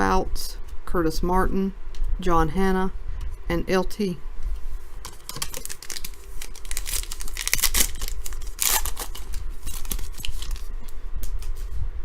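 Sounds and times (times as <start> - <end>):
cards being handled: 5.1 - 10.7
wrapper tearing and crinkling: 5.1 - 10.7.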